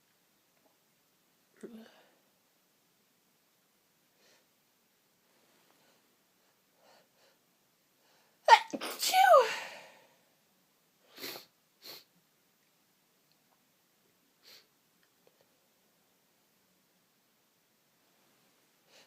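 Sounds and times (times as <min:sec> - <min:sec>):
woman sneezing: 0:08.5 - 0:10.0.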